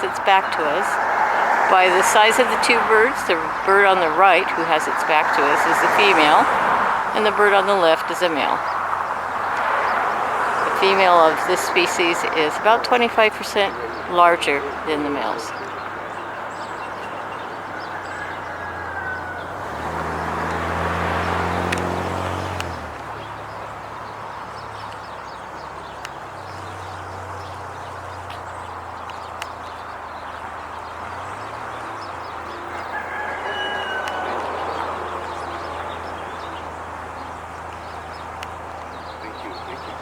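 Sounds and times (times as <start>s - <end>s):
low engine hum: 0.0s - 40.0s
outdoor background noise: 0.0s - 40.0s
bird's falling call: 32.7s - 36.5s.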